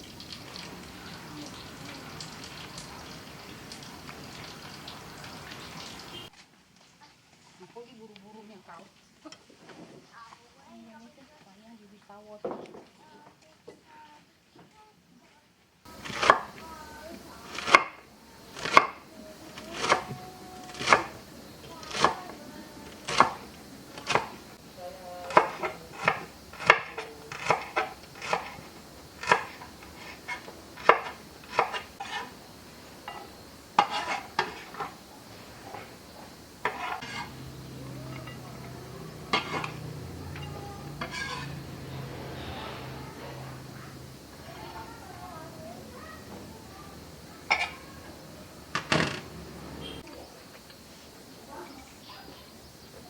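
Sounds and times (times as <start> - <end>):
knife chopping on cutting board: 16.0 - 16.5, 17.5 - 18.0, 18.6 - 19.0, 19.6 - 21.2, 21.9 - 22.3, 23.0 - 23.4, 24.0 - 24.4, 25.3 - 28.6, 29.2 - 29.6, 30.2 - 32.2.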